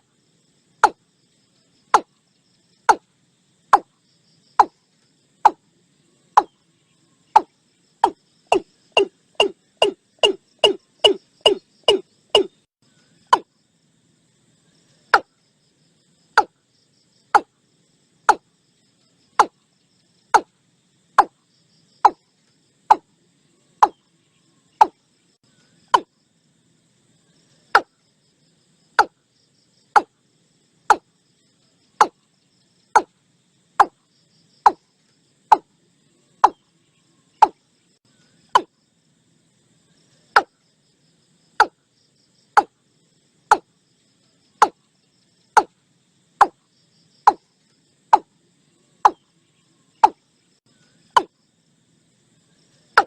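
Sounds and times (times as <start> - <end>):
bird calling sharp notes: 7.4 - 12.6.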